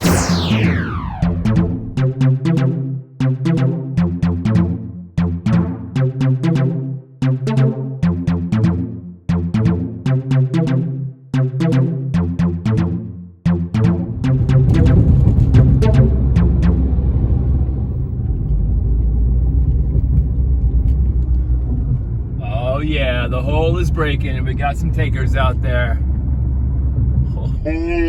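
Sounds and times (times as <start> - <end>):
electronic synthesizer and drum music: 0.0 - 17.0.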